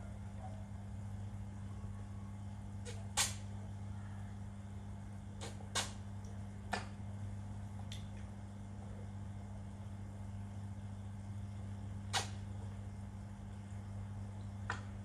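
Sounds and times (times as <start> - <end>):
steady low hum: 0.0 - 15.0
fish sucking pop: 12.1 - 12.4.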